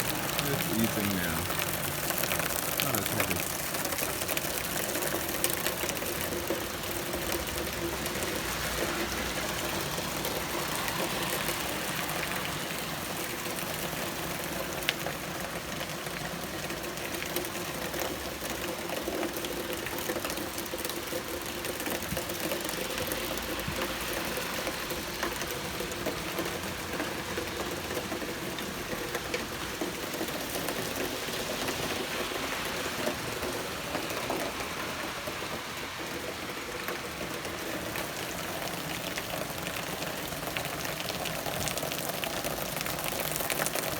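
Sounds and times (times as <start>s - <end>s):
heavy rain hissing: 0.0s - 3.9s.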